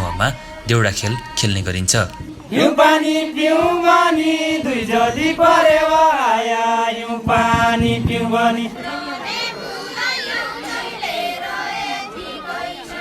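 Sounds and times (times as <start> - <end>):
voices singing slow folk melody: 0.0 - 13.0.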